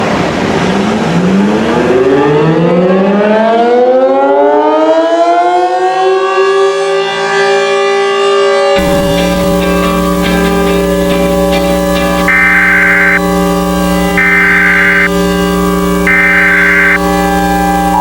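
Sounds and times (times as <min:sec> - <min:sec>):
warning siren winding up: 0:08.8 - 0:18.0.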